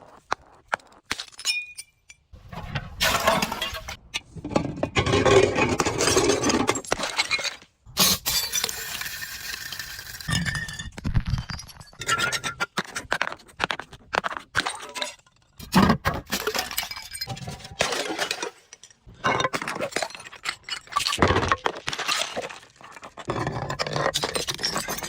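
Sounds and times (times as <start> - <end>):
glass bottles clinking: 4.6 - 12.6, 14.9 - 22.4
glass crunching and shattering: 5.9 - 12.6, 14.6 - 25.0.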